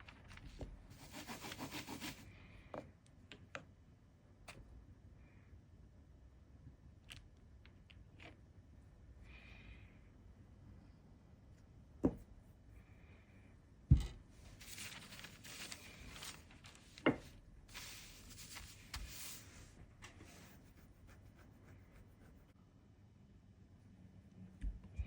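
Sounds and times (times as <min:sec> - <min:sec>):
paper and tools rustling: 0:00.0 - 0:02.2, 0:14.4 - 0:20.5.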